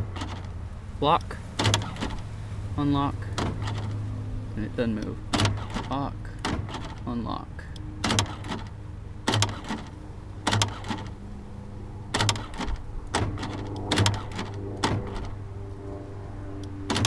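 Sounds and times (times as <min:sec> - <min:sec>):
steady low hum: 0:00.0 - 0:17.0
power door locks clunking: 0:01.6 - 0:02.2, 0:03.3 - 0:04.0, 0:05.3 - 0:07.1, 0:08.0 - 0:11.2, 0:12.1 - 0:15.4, 0:16.7 - 0:17.0.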